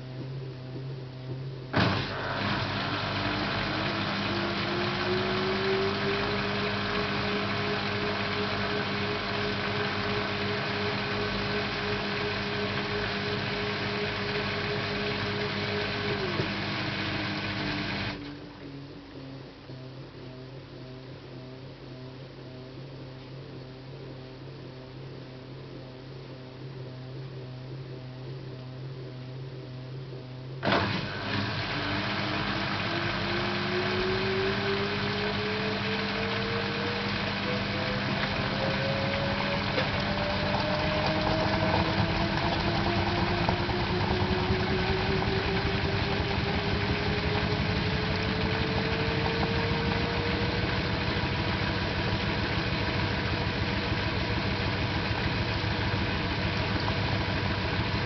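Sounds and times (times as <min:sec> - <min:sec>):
washing machine running: 0:00.0 - 0:18.9, 0:30.6 - 0:58.0
motor whine rising in pitch: 0:00.0 - 0:58.0.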